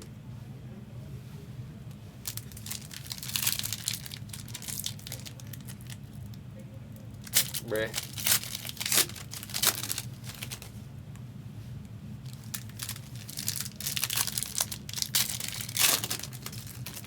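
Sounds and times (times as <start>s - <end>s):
card pack wrappers crinkling and tearing: 2.2s - 6.3s, 7.1s - 10.7s, 12.2s - 17.0s.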